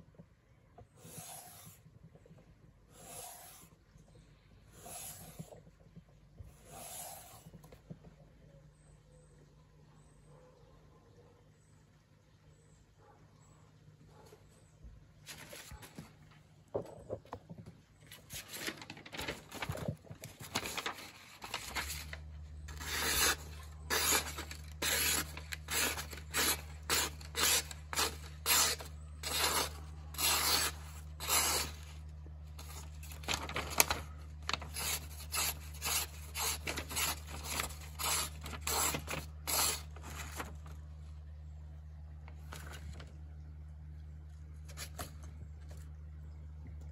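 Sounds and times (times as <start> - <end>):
knife blade rubbing strokes: 22.7 - 31.9.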